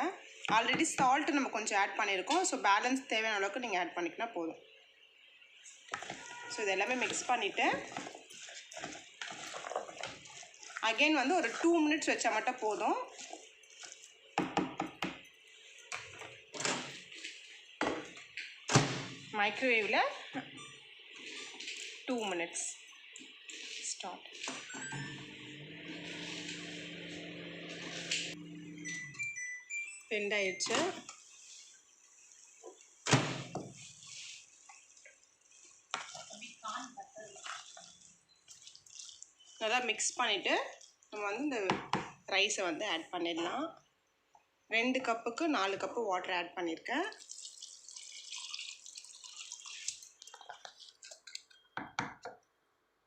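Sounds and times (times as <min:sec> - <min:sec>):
spoon stirring in a bowl: 0:05.9 - 0:16.2, 0:33.6 - 0:39.6, 0:47.1 - 0:52.5.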